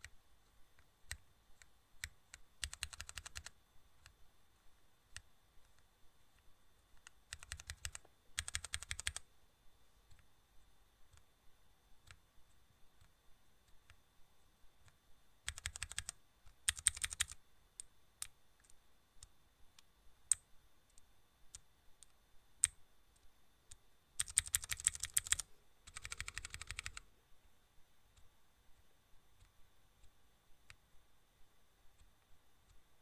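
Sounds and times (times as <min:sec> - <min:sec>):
rapid clicking: 0:24.2 - 0:27.0.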